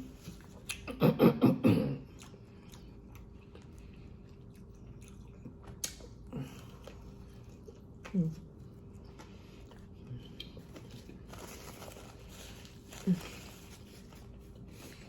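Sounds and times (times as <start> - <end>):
chewing and biting food: 0.1 - 0.9, 2.0 - 15.0.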